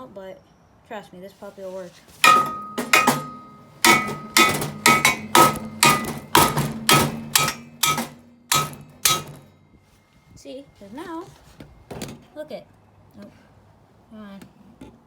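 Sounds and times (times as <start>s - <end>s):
mallet hammering on metal bar: 2.2s - 9.5s
metal ringing: 2.2s - 9.7s.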